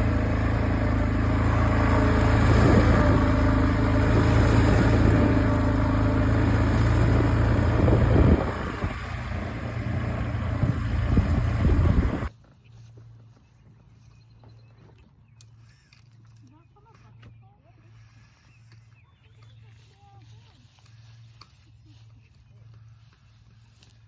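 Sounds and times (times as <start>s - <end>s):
atv engine running: 0.0s - 12.3s.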